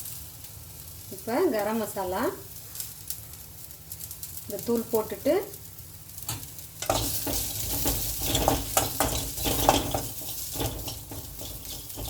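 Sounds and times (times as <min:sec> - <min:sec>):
onion sizzling in a pan: 0:00.0 - 0:12.0
spoon scraping a pan: 0:06.3 - 0:12.0.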